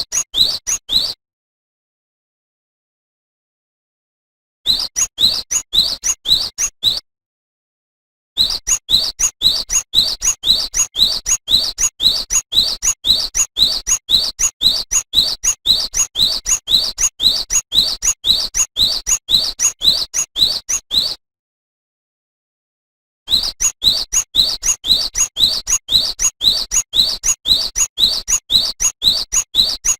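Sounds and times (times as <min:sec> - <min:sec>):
bird singing whistled notes: 0:00.0 - 0:01.2, 0:04.7 - 0:07.0, 0:08.4 - 0:21.2, 0:23.3 - 0:29.9.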